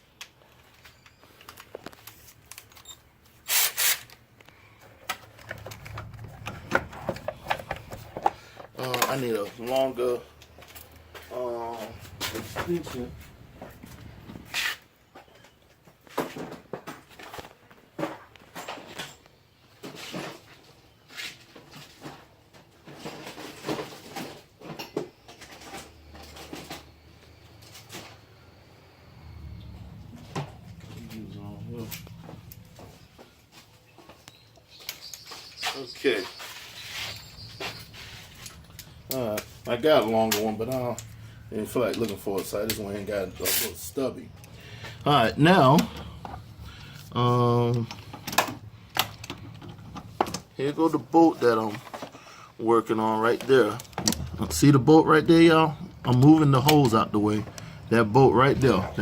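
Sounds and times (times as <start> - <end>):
hand tools clinking and knocking: 4.8 - 15.5, 29.3 - 52.2
low steady hum: 25.6 - 33.4, 37.0 - 52.5.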